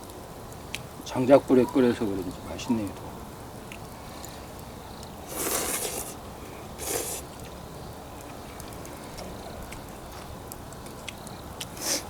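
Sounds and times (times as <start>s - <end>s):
slurping noodles: 5.2s - 7.5s, 11.8s - 12.0s.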